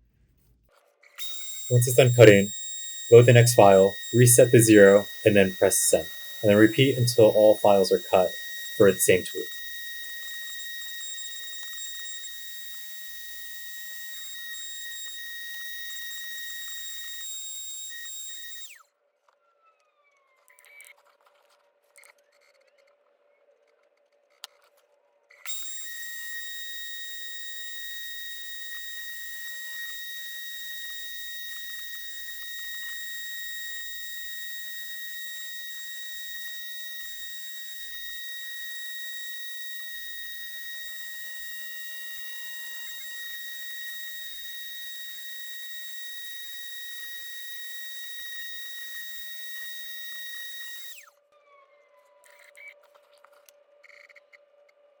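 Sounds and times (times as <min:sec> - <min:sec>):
router spindle high-pitched whine: 0:01.2 - 0:18.8, 0:25.5 - 0:51.1.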